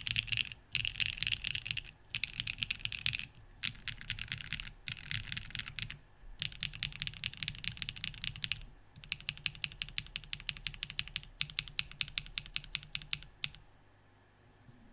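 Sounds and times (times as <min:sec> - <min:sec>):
mechanical keyboard typing: 0:00.0 - 0:13.6.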